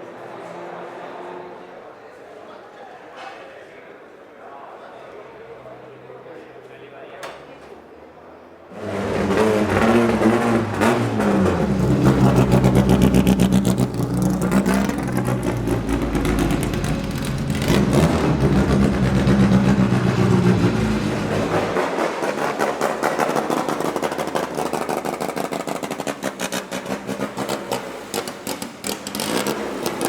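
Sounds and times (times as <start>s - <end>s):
racing car engine revving: 8.7s - 30.0s.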